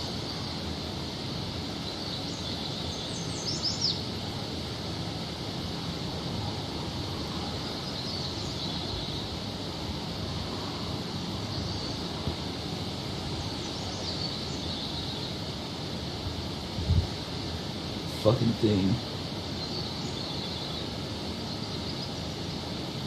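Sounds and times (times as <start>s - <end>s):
outdoor background noise: 0.0s - 23.0s
faint high bird chirps: 1.8s - 4.1s, 13.2s - 15.4s, 19.6s - 22.4s.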